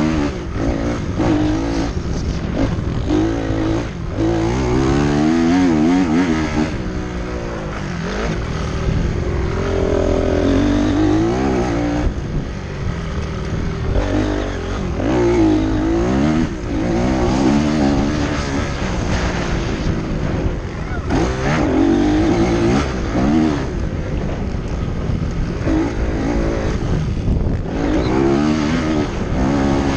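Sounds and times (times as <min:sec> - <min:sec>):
dirt bike engines revving: 0:00.0 - 0:29.9.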